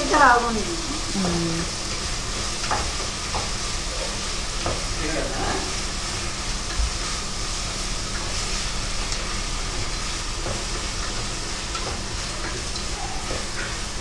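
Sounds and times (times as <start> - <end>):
onions and tomatoes sizzling: 0.0 - 14.0.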